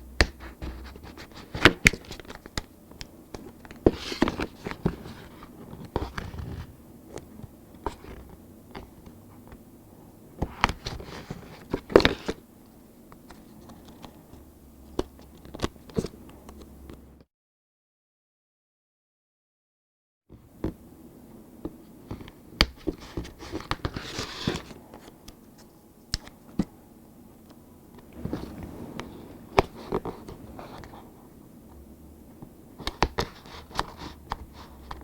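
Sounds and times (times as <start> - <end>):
paper crackles and rustles: 3.3 - 9.0.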